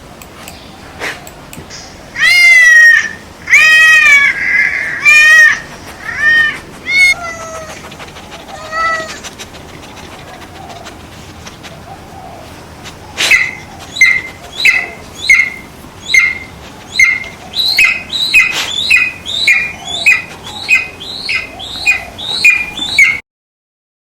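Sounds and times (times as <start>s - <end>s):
high-pitched squeaky chirps: 13.2s - 23.2s.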